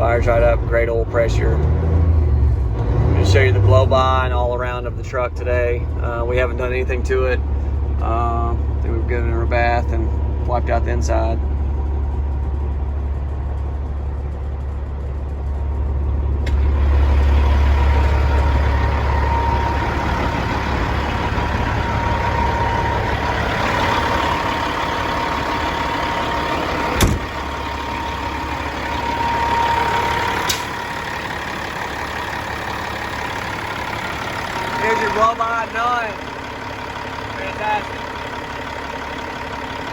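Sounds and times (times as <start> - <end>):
diesel engine idling: 0.0 - 39.9
thin whine: 13.5 - 31.2
sharp knocks: 27.0 - 27.3.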